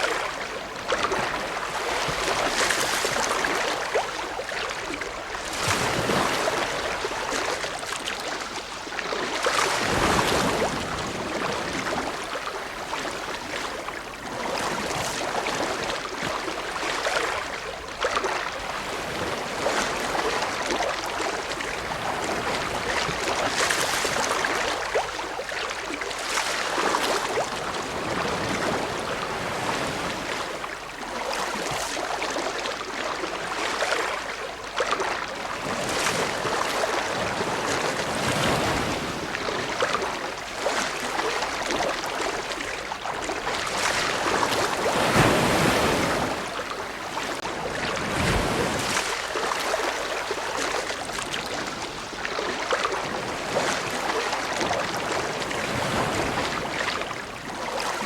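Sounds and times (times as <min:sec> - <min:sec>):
ocean waves breaking: 0:35.5 - 0:58.0.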